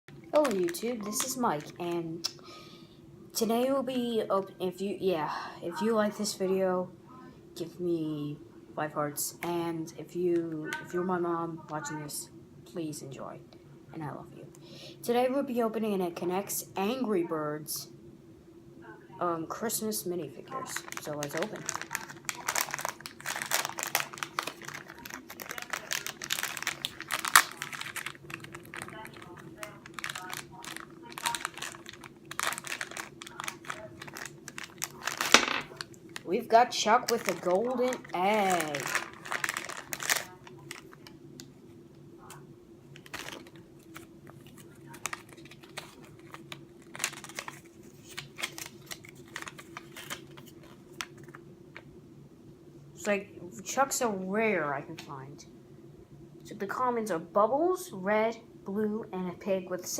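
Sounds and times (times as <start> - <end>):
steady low hum: 0.0 - 59.9
plastic wrapper tearing and crinkling: 0.1 - 2.4, 20.5 - 41.5, 42.9 - 51.4.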